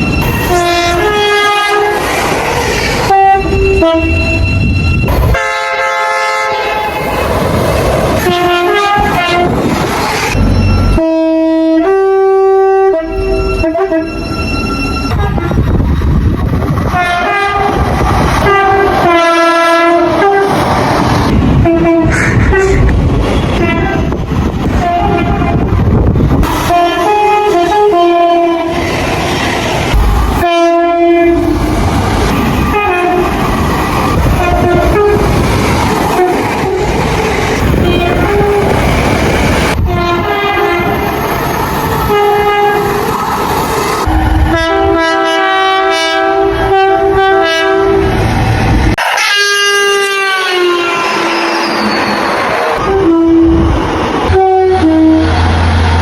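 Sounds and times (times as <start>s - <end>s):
train rumbling on rails: 0.0s - 56.0s
train horn blasts: 0.2s - 2.0s, 3.1s - 7.0s, 8.2s - 9.6s, 10.9s - 15.7s, 16.9s - 20.6s, 21.6s - 22.8s, 23.4s - 24.2s, 24.8s - 25.7s, 26.6s - 28.8s, 30.4s - 31.6s, 32.6s - 33.4s, 34.3s - 35.3s, 36.1s - 36.9s, 37.7s - 38.8s, 39.8s - 41.1s, 42.1s - 43.0s, 44.0s - 48.1s, 49.1s - 51.8s, 52.8s - 53.7s, 54.3s - 55.4s.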